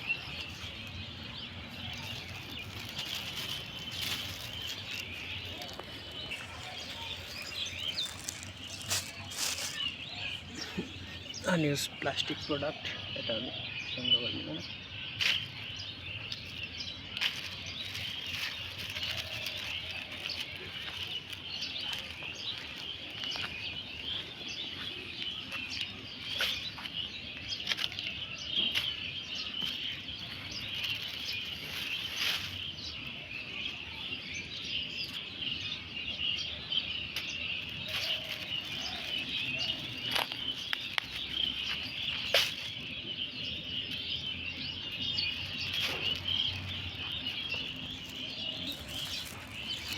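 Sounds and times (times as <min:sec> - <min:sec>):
rustling: 0:00.0 - 0:10.6, 0:16.3 - 0:24.2, 0:45.1 - 0:49.9
small birds chirping: 0:00.0 - 0:49.9.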